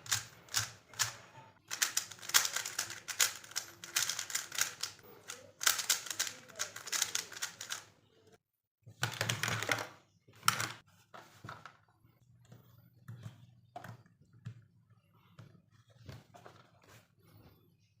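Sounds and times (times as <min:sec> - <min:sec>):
puzzle cube clicking: 0:00.1 - 0:07.9.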